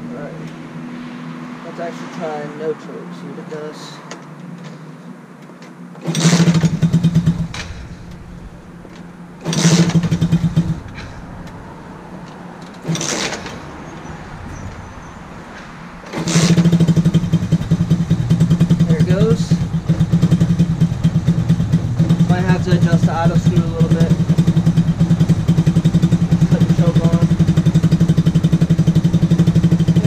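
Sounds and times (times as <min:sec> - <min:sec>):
small motorbike engine starting: 0:06.0 - 0:08.1, 0:09.4 - 0:11.3, 0:12.6 - 0:14.7, 0:16.1 - 0:30.0
engine idling roughly: 0:16.1 - 0:30.0.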